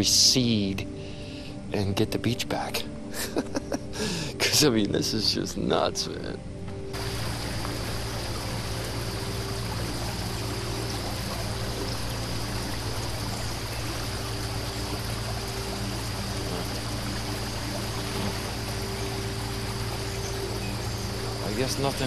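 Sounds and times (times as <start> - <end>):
floodwater rushing: 6.9 - 22.0.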